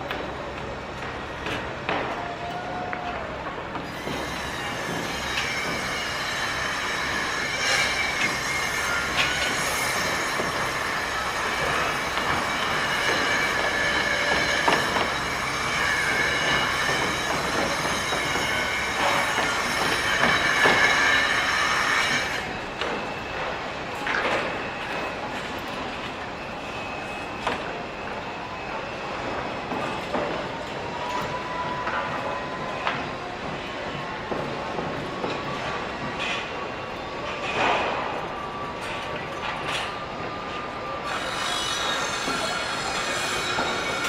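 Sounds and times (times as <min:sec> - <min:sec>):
high-pitched metal squealing: 0:03.8 - 0:23.4, 0:39.3 - 0:44.0.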